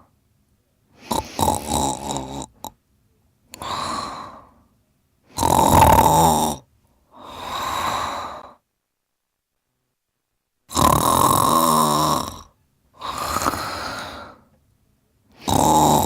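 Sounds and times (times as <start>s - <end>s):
person snoring: 1.0s - 2.7s, 3.6s - 4.5s, 5.3s - 8.6s, 10.7s - 14.4s, 15.4s - 16.0s.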